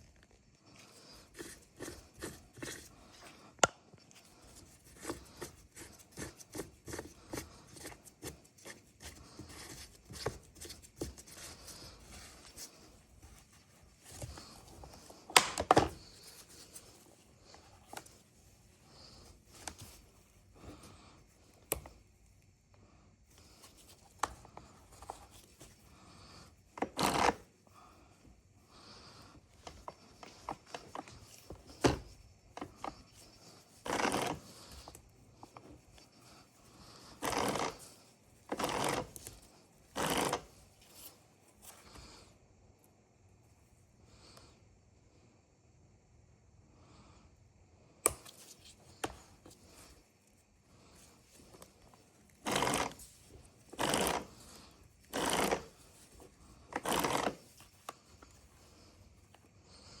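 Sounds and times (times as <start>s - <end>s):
short rasping bursts: 52.4s - 53.1s, 53.7s - 55.8s, 56.7s - 57.5s.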